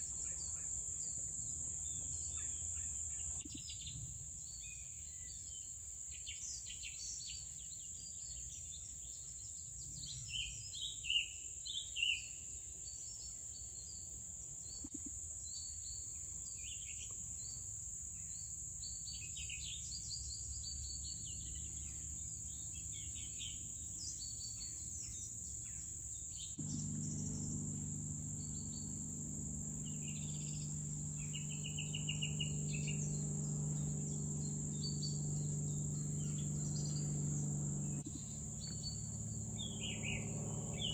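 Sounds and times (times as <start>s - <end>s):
insect chorus trilling: 14.7s - 40.9s
birds chirping: 18.2s - 40.9s
low steady hum: 18.2s - 40.9s.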